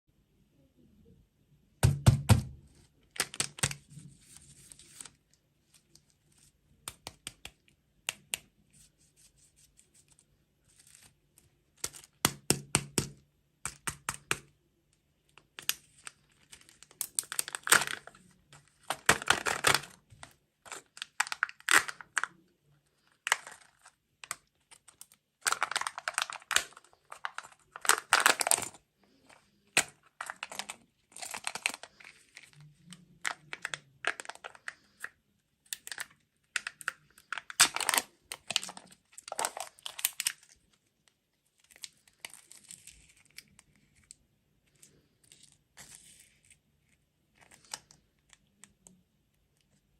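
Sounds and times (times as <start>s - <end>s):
snack packaging crinkling: 3.0s - 8.2s, 15.4s - 48.9s.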